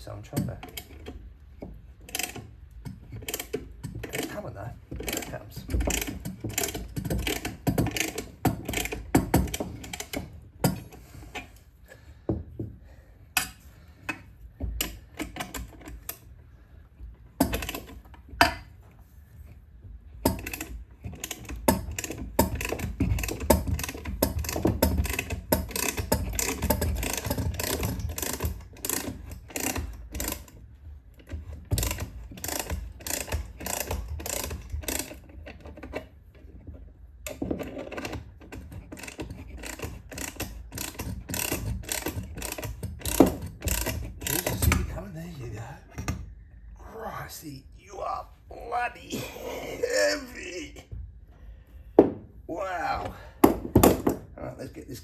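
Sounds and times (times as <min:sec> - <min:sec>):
ratchet clicking: 0:02.1 - 0:02.4, 0:05.0 - 0:11.4, 0:20.3 - 0:30.5, 0:31.3 - 0:35.2, 0:38.9 - 0:44.8.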